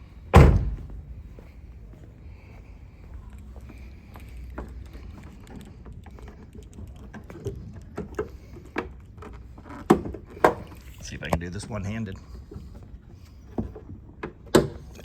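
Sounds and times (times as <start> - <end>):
low steady rumble: 0.0 - 7.8
footsteps: 0.4 - 7.0.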